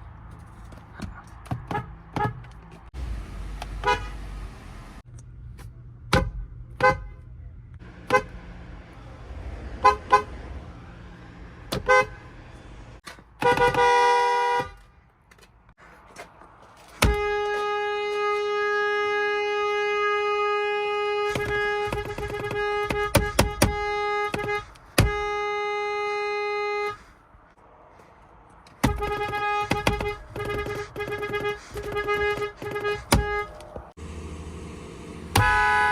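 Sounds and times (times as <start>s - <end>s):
car horn honking: 3.7s - 4.4s, 6.1s - 7.2s, 7.8s - 8.6s, 9.7s - 10.4s, 11.7s - 12.4s, 13.4s - 14.8s, 17.0s - 27.1s, 28.8s - 33.9s, 35.2s - 35.9s.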